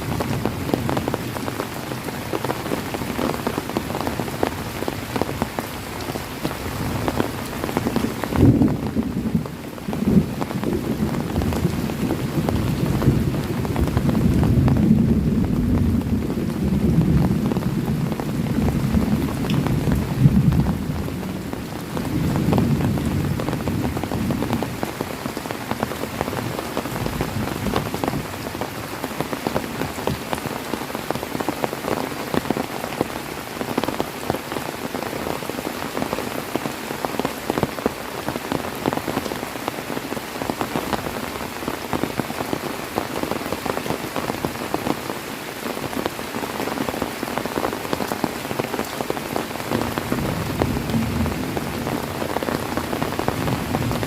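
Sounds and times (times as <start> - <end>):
heavy rain falling: 0.0 - 54.0
low thunder rumble: 8.0 - 21.4, 49.8 - 54.0.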